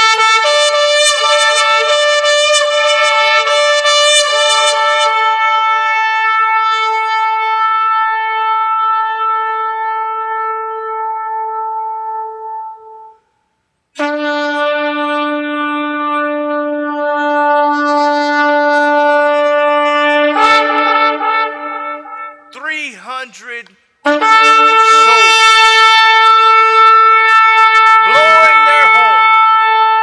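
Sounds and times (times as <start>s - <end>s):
trumpet-like horn blasts: 0.0s - 10.7s, 14.0s - 16.5s, 20.1s - 30.0s.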